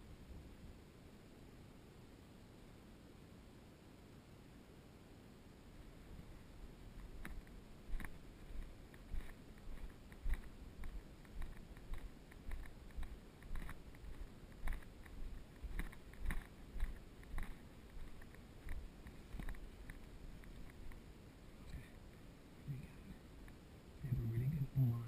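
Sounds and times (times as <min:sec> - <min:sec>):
rustling and crunching of dry grass: 0:06.2 - 0:21.2
soft footstep thumps: 0:07.0 - 0:21.0.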